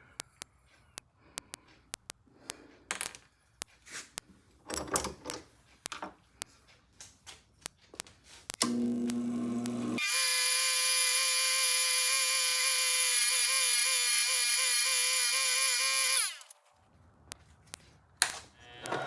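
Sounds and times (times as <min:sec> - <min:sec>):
sharp clicks: 0:00.0 - 0:09.8
power tool motor whine: 0:08.6 - 0:16.6.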